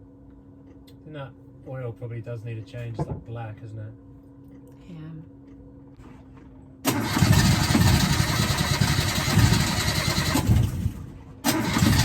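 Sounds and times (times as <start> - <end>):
diesel engine cranking: 6.8 - 12.0.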